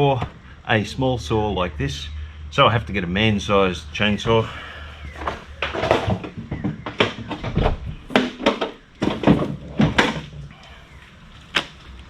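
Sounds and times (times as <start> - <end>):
tools knocking and clunking: 4.2 - 10.6.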